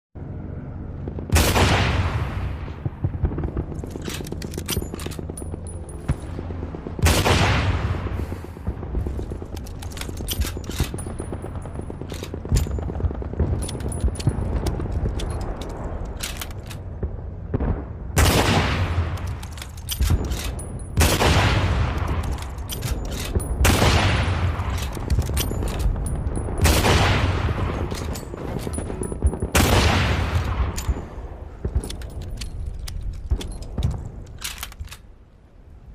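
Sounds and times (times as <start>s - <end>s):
steady low rumble: 0.2s - 35.9s
rifle shots echoing: 7.0s - 16.7s, 17.6s - 32.4s.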